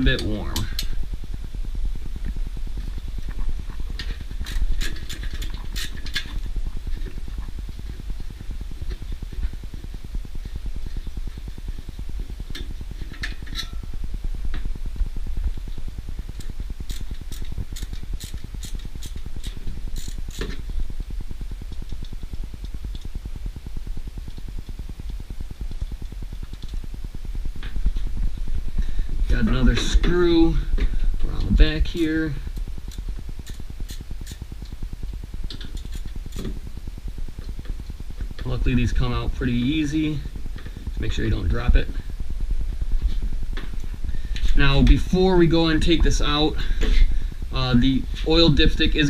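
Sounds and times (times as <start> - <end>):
steady low hum: 0.0 - 49.0
ratchet clicking: 4.0 - 6.4, 16.3 - 20.6, 32.9 - 34.4.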